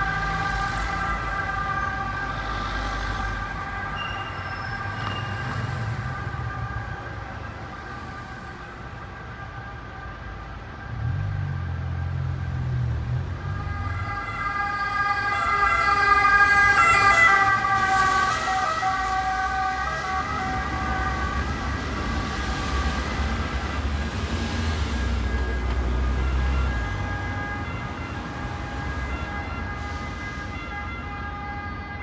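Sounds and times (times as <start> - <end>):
ambulance siren passing: 0.0 - 32.0
traffic rumble: 0.0 - 32.0.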